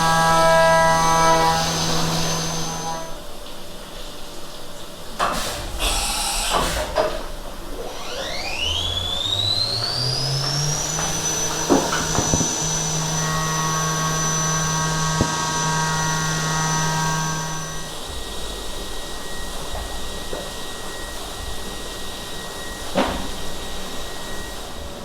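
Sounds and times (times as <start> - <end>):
spindle whine rising: 5.6 - 25.0.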